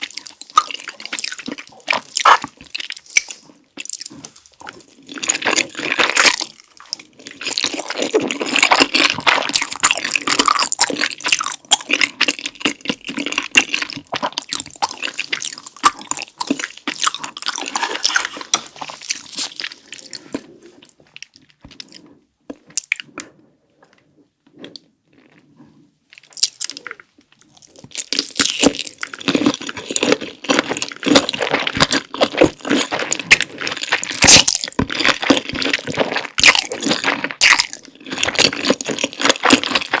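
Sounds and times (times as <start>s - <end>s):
wet sticky mouth sounds: 0.0s - 30.0s
close-miked chewing of noodles: 0.0s - 40.0s.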